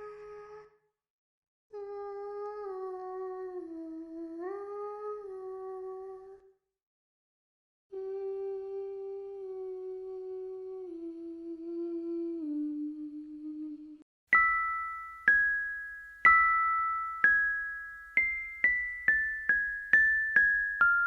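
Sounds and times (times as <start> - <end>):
bell-like chime notes: 14.4 - 21.0.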